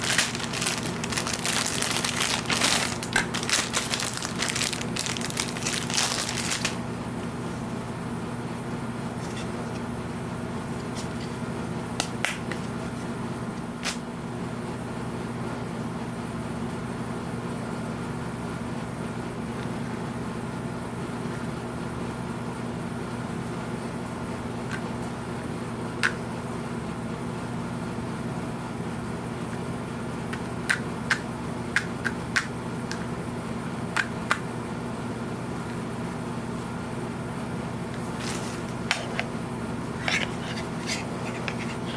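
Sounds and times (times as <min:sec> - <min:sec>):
packaging clicks and taps: 0:00.0 - 0:06.8
steady low hum: 0:00.0 - 0:14.3, 0:35.0 - 0:41.9.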